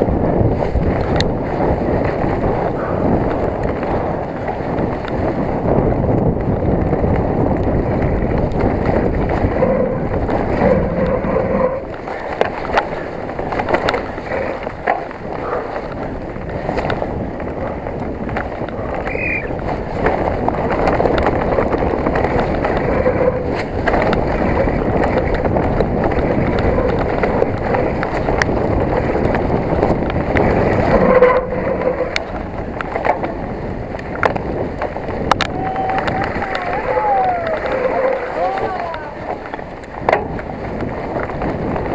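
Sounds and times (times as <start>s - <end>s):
bike knocking and rattling: 0.0s - 41.9s
tyres on dirt: 0.0s - 41.9s
wind rushing on microphone: 0.0s - 41.9s
bike squeak: 19.0s - 19.6s.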